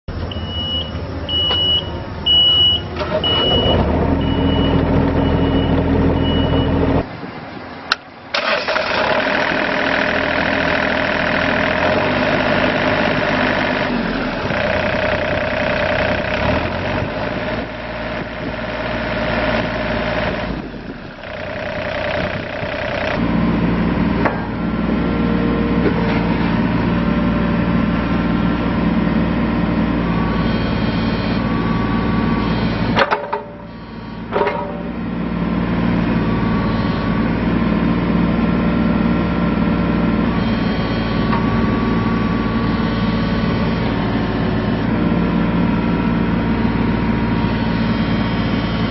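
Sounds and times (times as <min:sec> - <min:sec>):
diesel engine starting and running: 0:00.1 - 0:48.9
warning buzzer beeping: 0:30.2 - 0:34.4, 0:40.4 - 0:44.0.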